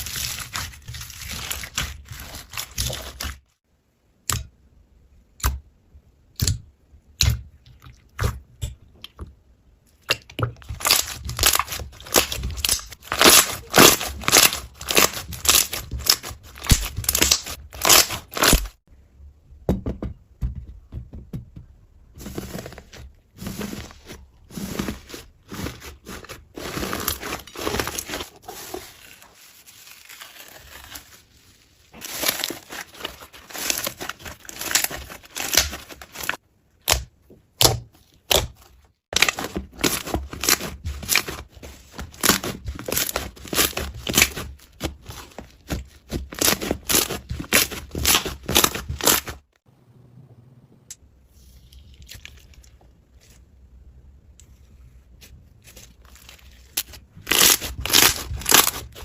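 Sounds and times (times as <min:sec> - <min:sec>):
slime crackling and squishing: 0:00.0 - 0:03.6, 0:10.6 - 0:18.8, 0:22.8 - 0:37.0, 0:37.6 - 0:49.5, 0:55.2 - 0:59.0.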